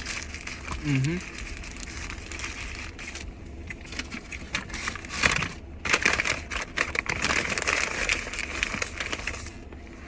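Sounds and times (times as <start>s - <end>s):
crunching of eating fried chicken: 0.0s - 9.7s.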